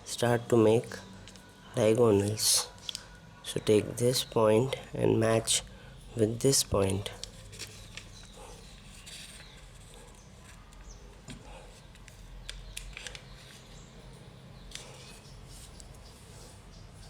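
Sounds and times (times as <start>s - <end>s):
paper rustling and crackling: 7.1s - 11.2s, 11.8s - 16.6s.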